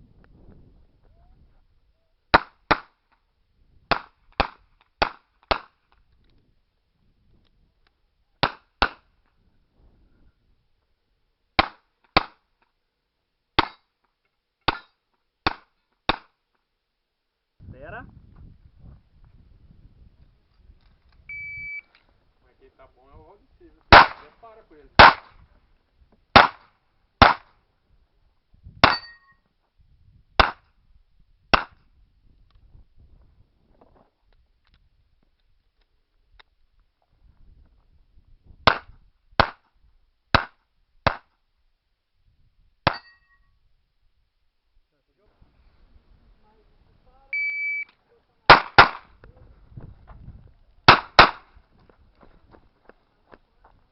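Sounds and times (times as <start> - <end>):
brief metallic ring: 28.9 - 29.4, 42.9 - 43.6.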